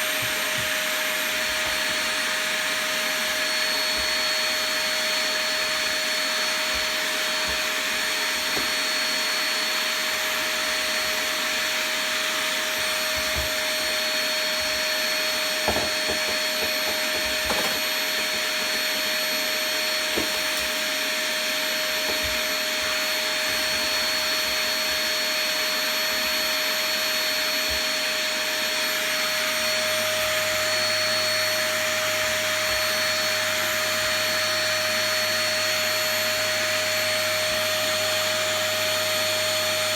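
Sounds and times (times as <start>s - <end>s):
vacuum cleaner bumping: 0.0s - 26.4s
vacuum cleaner whine: 0.0s - 39.9s.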